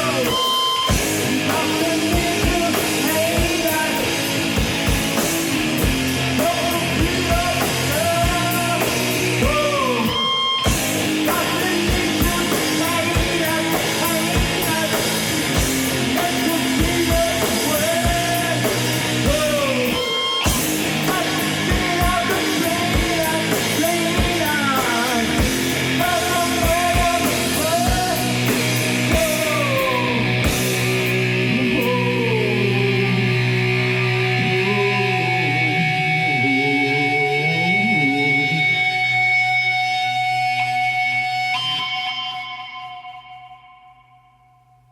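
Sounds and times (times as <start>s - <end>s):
pounding drum kit: 0.0s - 32.0s
distorted electric guitar: 0.0s - 44.9s.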